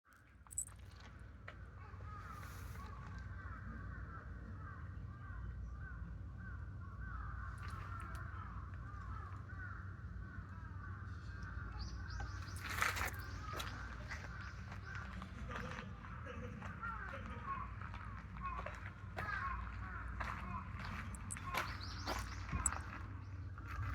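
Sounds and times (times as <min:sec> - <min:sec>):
birds chirping: 0:11.6 - 0:15.2, 0:18.4 - 0:23.9.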